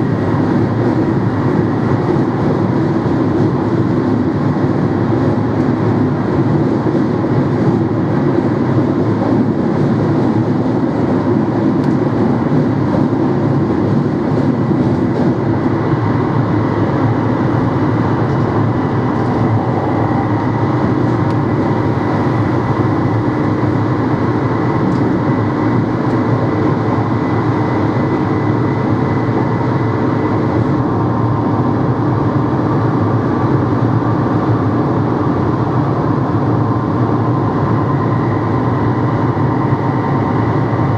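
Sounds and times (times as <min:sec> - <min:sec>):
electric train running: 0:07.4 - 0:40.9
thin high whine: 0:15.4 - 0:31.8.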